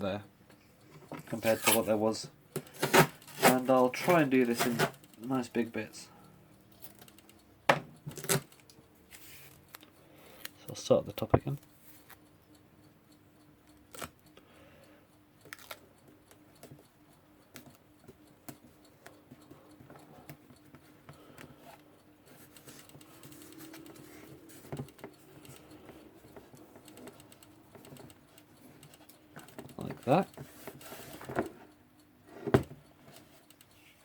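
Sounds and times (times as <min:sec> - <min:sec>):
adhesive tape clicks and crackles: 0:02.5 - 0:05.8, 0:06.6 - 0:12.9, 0:13.6 - 0:14.4, 0:15.4 - 0:19.5, 0:21.7 - 0:32.1
crackly tape rustle: 0:15.4 - 0:16.0.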